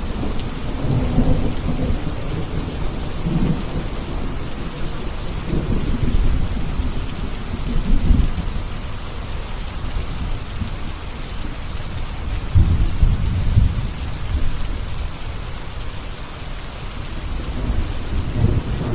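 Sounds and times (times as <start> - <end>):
thunder rumbling: 0.0 - 8.6, 12.2 - 14.9, 17.2 - 18.9
heavy rain: 0.0 - 18.9.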